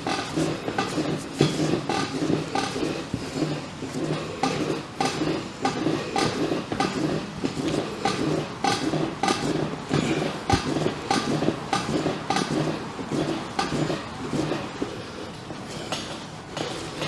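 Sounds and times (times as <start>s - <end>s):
sharp knocks: 8.0s - 12.6s.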